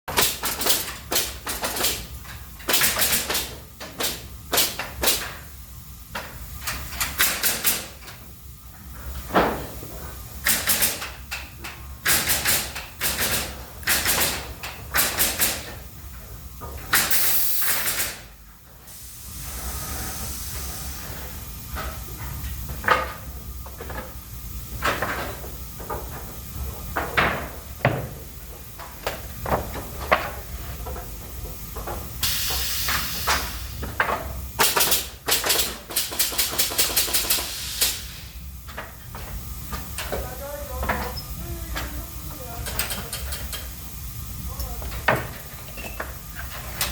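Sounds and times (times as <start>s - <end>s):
machine knocks and clacks: 0.1s - 5.4s, 6.1s - 8.2s, 10.4s - 15.8s, 33.2s - 37.5s
air hiss: 16.9s - 21.3s, 32.2s - 33.8s, 36.2s - 38.5s.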